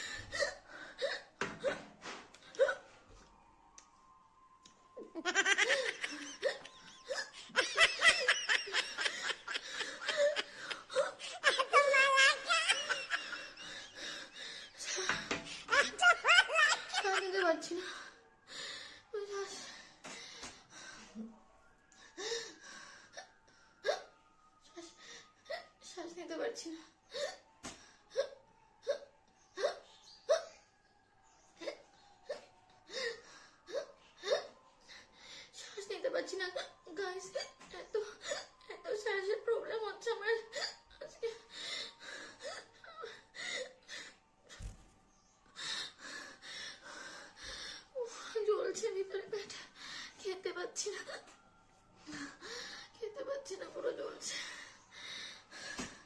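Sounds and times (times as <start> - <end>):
person laughing hard: 5.2 - 14.2, 14.9 - 17.3.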